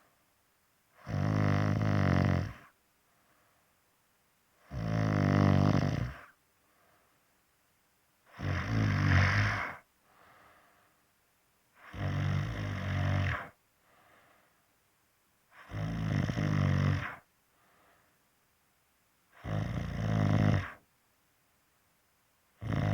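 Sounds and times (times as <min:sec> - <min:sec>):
loud low-pitched snoring: 0:01.0 - 0:02.7, 0:04.7 - 0:06.3, 0:08.3 - 0:09.8, 0:11.8 - 0:13.6, 0:15.6 - 0:17.2, 0:19.4 - 0:20.8, 0:22.6 - 0:22.9
faint short breath: 0:03.0 - 0:03.8, 0:06.6 - 0:07.3, 0:09.2 - 0:11.1, 0:13.8 - 0:14.8, 0:17.4 - 0:18.3.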